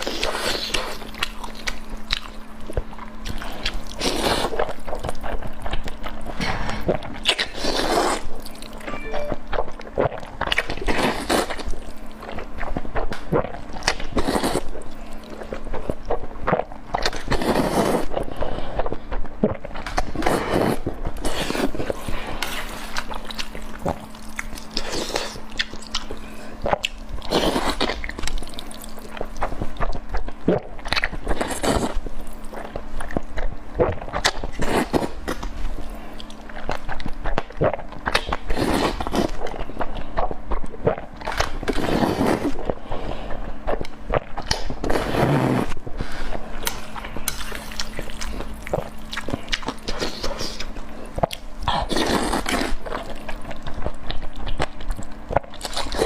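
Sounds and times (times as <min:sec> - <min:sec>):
faint steady hum: 0:00.0 - 0:56.0
person chewing crunchy food: 0:00.0 - 0:56.0.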